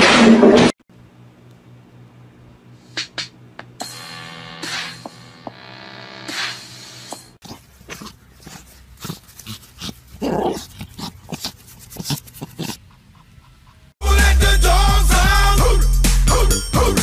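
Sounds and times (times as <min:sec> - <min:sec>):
loud music: 0:14.0 - 0:17.0.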